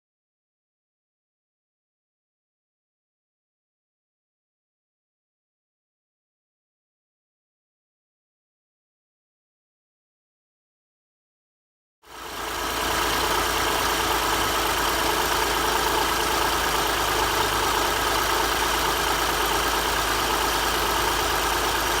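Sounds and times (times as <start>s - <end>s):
car engine idling: 12.1s - 22.0s.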